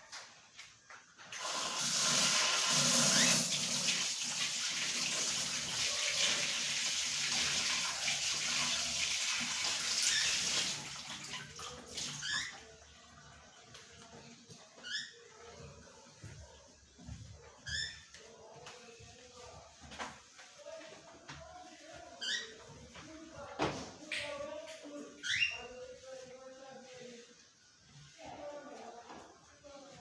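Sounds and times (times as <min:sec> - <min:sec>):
water running from tap into sink: 0:01.3 - 0:12.3.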